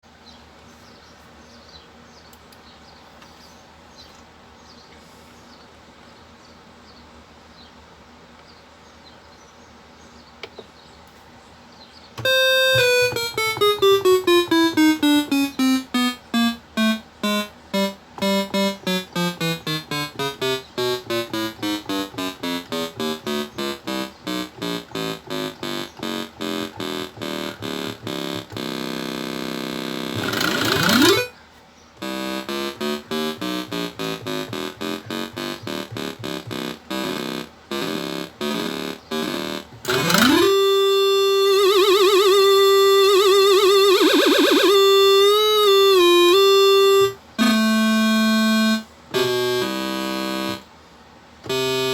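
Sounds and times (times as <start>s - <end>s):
electric piano single notes: 12.2s - 31.3s, 32.0s - 41.6s, 44.7s - 50.6s, 51.5s - 51.9s.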